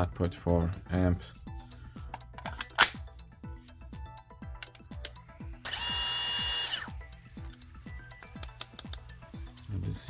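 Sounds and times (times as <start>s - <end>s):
cordless drill spinning: 5.6s - 7.0s.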